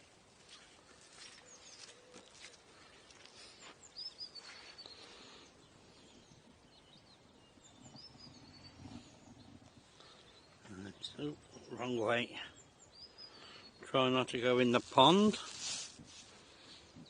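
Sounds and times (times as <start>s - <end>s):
bird chirps: 3.4s - 15.1s.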